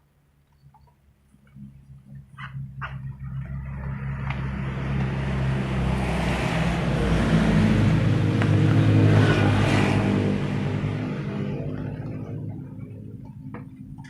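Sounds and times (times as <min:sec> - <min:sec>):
vehicle engine approaching: 0:01.3 - 0:14.0.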